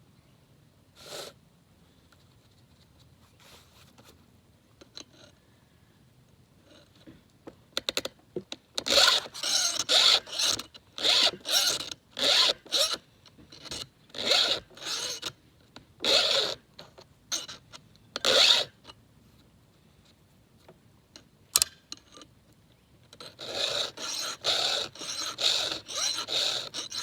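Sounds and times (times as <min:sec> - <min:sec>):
file rasping on saw chain: 0:08.9 - 0:13.0, 0:14.2 - 0:15.3, 0:23.2 - 0:27.0.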